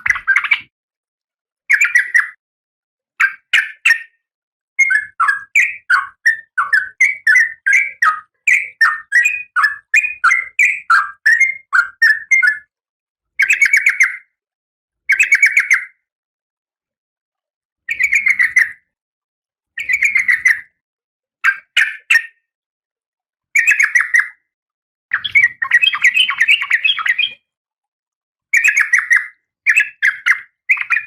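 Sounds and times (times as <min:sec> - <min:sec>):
bird harsh chattering: 0:00.0 - 0:00.7, 0:25.1 - 0:27.4.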